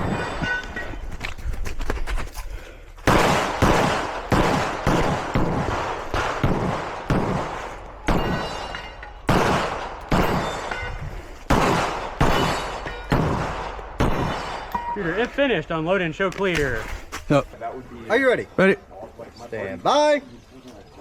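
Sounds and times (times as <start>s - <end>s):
pistol shots with echo: 3.1s - 14.9s.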